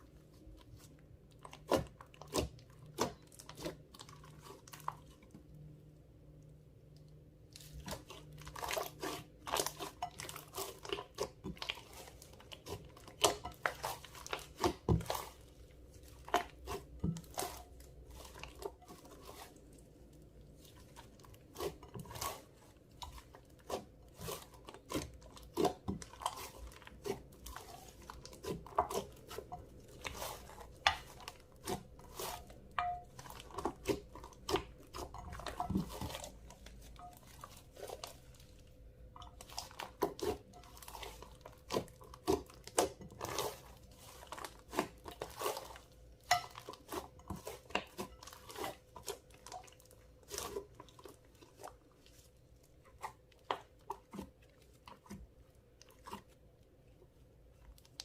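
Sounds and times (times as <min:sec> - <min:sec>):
slime crackling and popping: 0:39.3 - 0:52.1.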